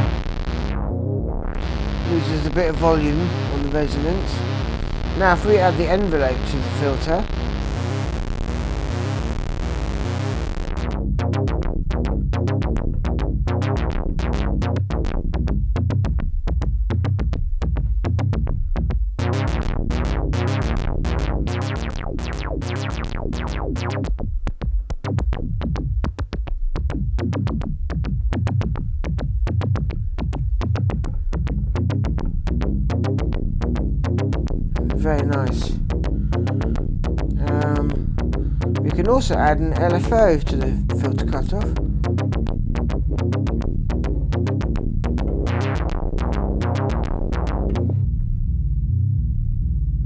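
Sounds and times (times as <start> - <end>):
pulsing synth bass: 0.0 - 50.0
synthesizer note sequence: 1.6 - 8.1.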